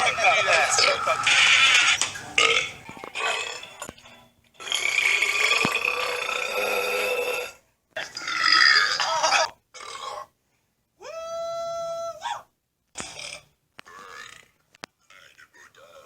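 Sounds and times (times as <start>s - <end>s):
man belching: 0.0s - 3.7s, 4.7s - 10.3s, 13.0s - 14.5s.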